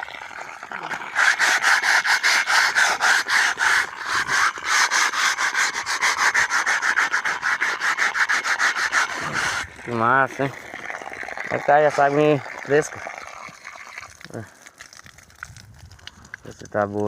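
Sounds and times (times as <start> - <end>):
sandpaper scrubbing by hand: 1.1 - 9.7.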